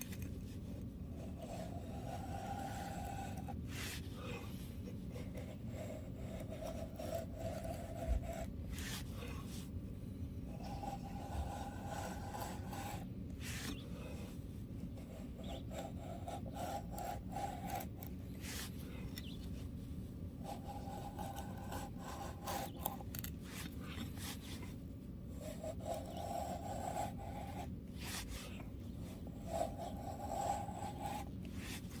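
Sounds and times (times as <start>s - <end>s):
knife scraping wood: 20.6s - 24.8s.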